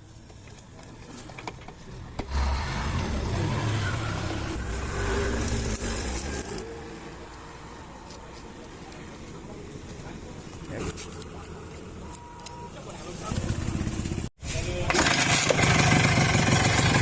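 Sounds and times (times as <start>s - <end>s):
engine starting and running: 2.2s - 6.8s, 13.2s - 17.0s.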